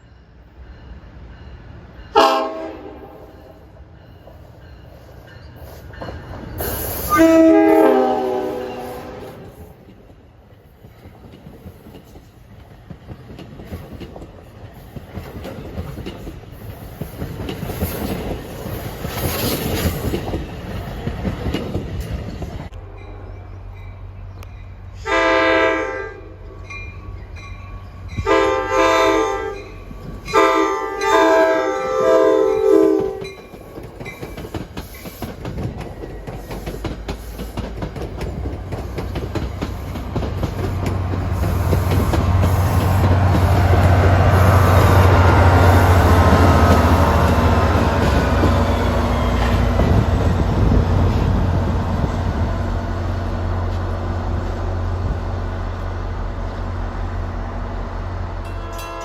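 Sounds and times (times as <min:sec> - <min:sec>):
locomotive air horn blasts: 0:02.2 - 0:03.6, 0:06.9 - 0:09.7, 0:25.0 - 0:26.5, 0:28.2 - 0:29.7, 0:30.3 - 0:33.3
wheels clacking over rail joints: 0:09.8 - 0:22.7, 0:32.8 - 0:54.5
locomotive engine hum: 0:20.1 - 0:59.0.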